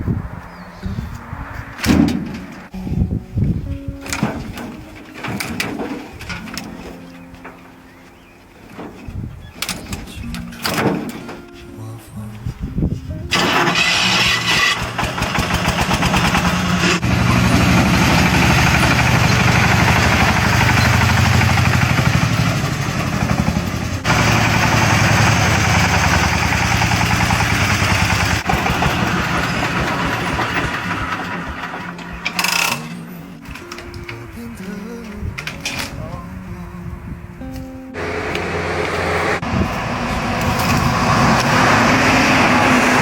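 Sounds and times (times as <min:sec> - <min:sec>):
small engine running: 0:13.3 - 0:32.8.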